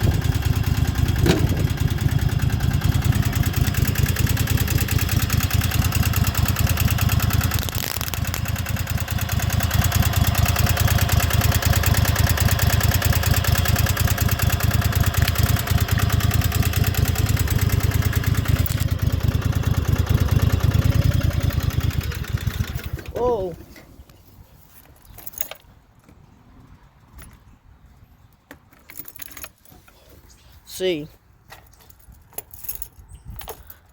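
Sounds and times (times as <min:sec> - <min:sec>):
lawnmower engine idling: 0:00.0 - 0:24.0.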